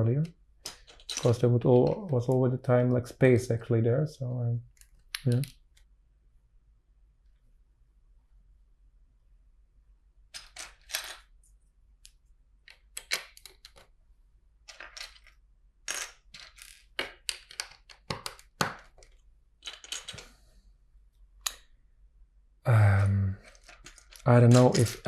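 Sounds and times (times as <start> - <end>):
plastic bricks clicking and clattering: 0.6 - 2.1, 10.3 - 11.3, 12.6 - 13.9, 14.6 - 20.3, 23.4 - 25.0.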